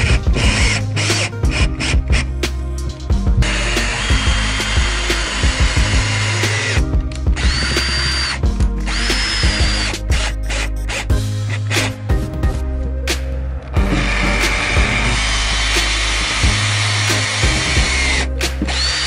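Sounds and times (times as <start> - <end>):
background music: 0.0 - 19.0
power drill driving screws: 3.4 - 11.9, 13.8 - 19.0.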